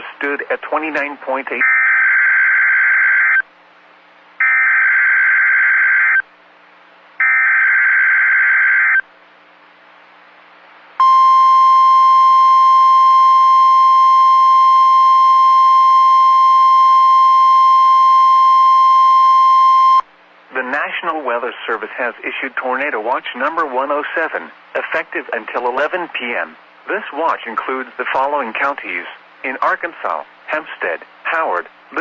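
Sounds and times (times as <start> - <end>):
steady warning alarm tone: 7.2 - 9.0, 11.0 - 20.0.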